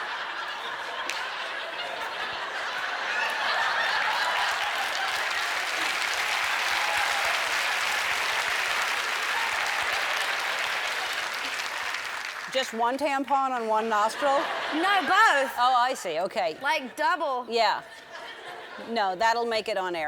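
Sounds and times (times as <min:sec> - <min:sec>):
audience laughing: 0:00.0 - 0:06.6, 0:13.8 - 0:19.2
audience applauding: 0:00.0 - 0:15.5.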